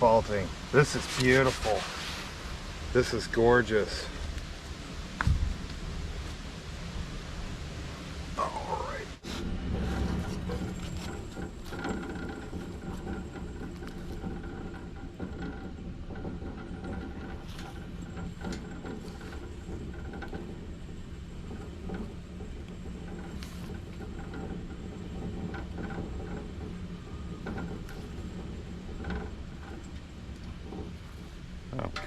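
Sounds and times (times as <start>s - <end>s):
bandsaw mill engine running: 0.0s - 32.0s.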